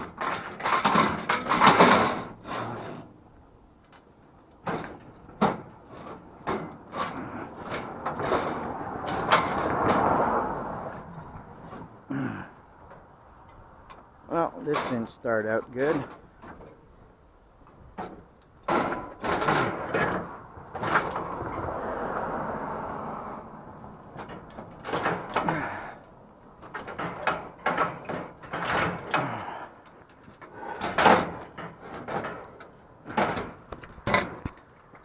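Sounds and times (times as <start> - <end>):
objects knocking and clattering: 0.0 - 2.8, 18.0 - 21.5
scraping slide: 0.2 - 3.2.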